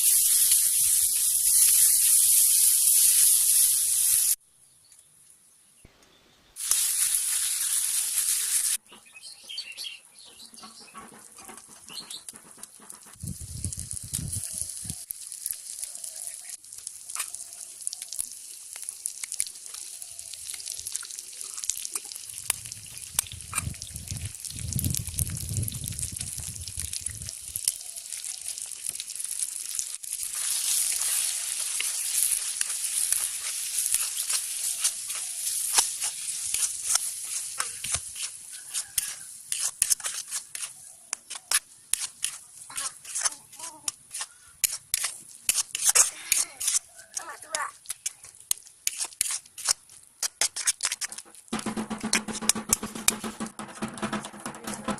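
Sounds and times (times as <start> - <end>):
frying sizzle: 0.0 - 4.4, 6.6 - 8.8, 12.5 - 54.9
utensil tapping a pan: 51.6 - 54.9.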